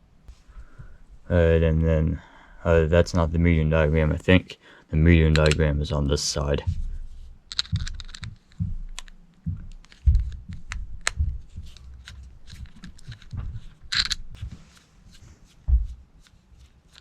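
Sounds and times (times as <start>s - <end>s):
small parts and tools clicking: 5.3s - 5.6s, 7.5s - 14.4s, 16.2s - 17.0s
dull low thumps: 6.4s - 14.6s, 15.6s - 16.2s.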